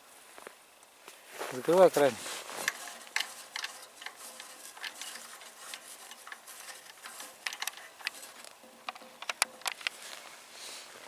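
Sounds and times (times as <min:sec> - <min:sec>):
faint hiss: 0:00.0 - 0:11.0
clicks of small metal parts: 0:02.6 - 0:10.0.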